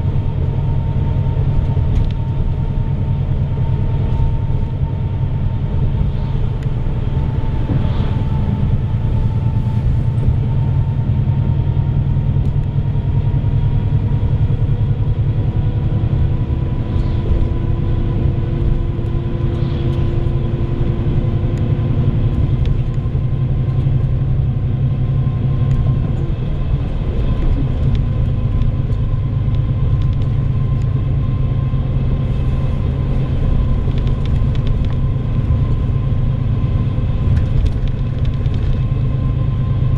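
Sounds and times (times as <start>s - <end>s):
bus engine drone: 0.0s - 39.9s
road rumble: 0.0s - 39.9s
steady whine: 0.0s - 39.9s.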